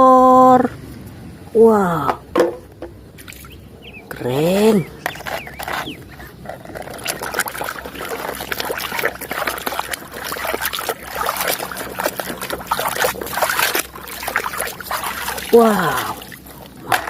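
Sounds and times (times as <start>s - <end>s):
water trickling and splashing: 2.7s - 17.0s.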